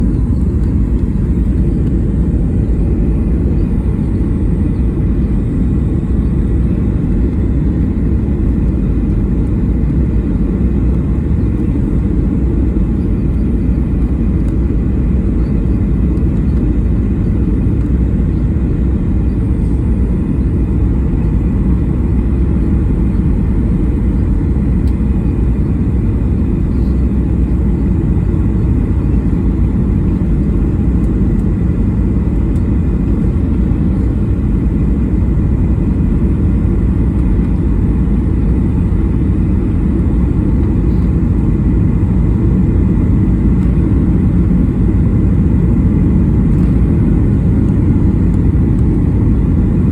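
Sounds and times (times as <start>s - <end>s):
jet airliner rumble: 0.0s - 49.9s.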